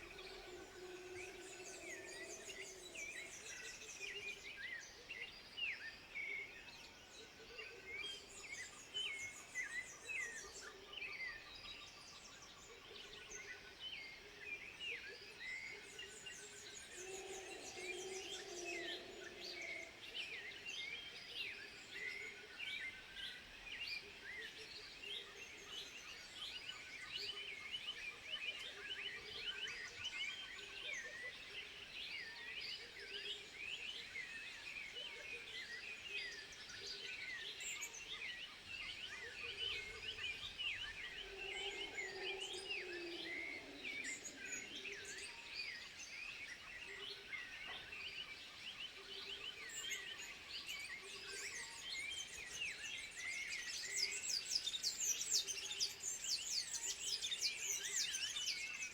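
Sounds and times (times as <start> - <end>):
chorus of chirping animal calls: 16.9 - 20.0, 39.7 - 45.3.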